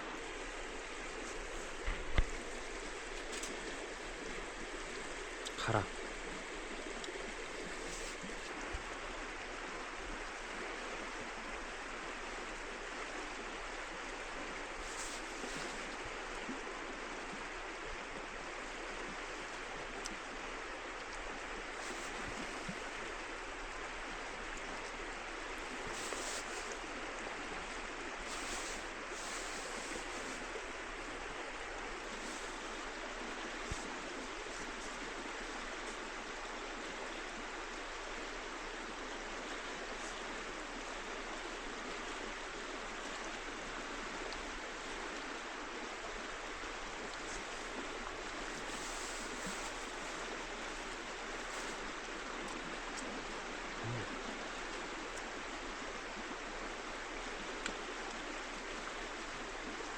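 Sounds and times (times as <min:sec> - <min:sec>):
river water rushing: 0:00.0 - 0:59.9.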